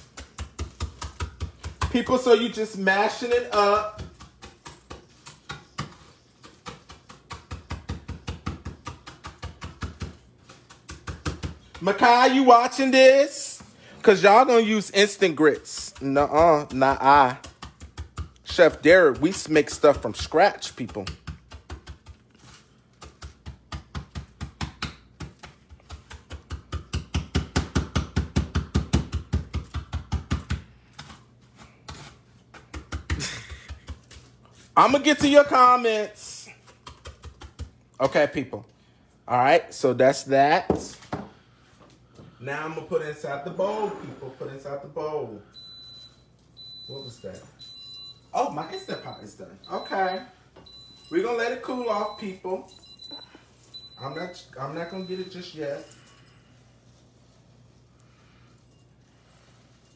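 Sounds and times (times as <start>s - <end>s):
pounding on a cutting board: 0.1s - 2.2s, 3.8s - 10.2s, 10.8s - 11.9s, 23.0s - 30.7s.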